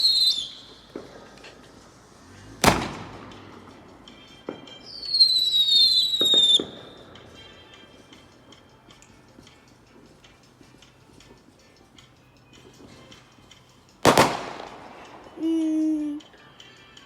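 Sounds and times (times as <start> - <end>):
small firework pops: 0.0 - 7.4, 14.0 - 16.2
shrill whistling firework: 0.0 - 7.8, 14.0 - 16.2
firework bang: 2.6 - 4.8, 5.9 - 7.2, 14.0 - 15.4.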